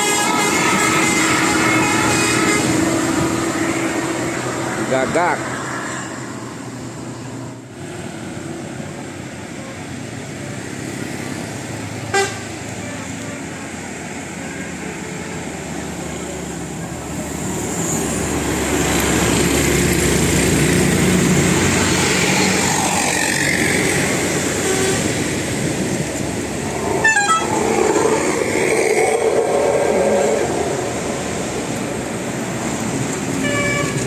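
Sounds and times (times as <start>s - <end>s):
bus multi-tone horn: 0.0s - 4.4s, 12.1s - 13.4s, 24.4s - 25.3s, 27.0s - 27.7s, 33.4s - 34.0s
passing traffic: 0.0s - 34.0s.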